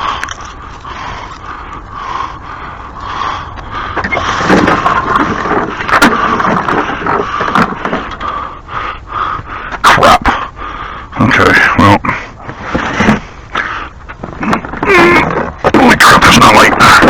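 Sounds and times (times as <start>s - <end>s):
hard objects scraping and knocking: 4.0s - 8.3s, 12.5s - 13.4s.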